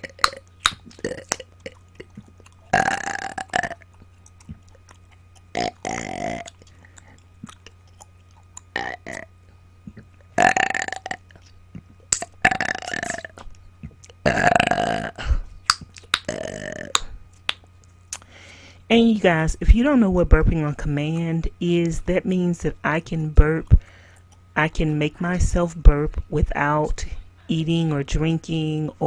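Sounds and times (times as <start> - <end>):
woman burping loudly: 0.0 - 3.8, 5.5 - 6.6, 8.8 - 9.3, 10.4 - 11.4, 12.4 - 13.4, 14.2 - 15.4, 16.3 - 17.0.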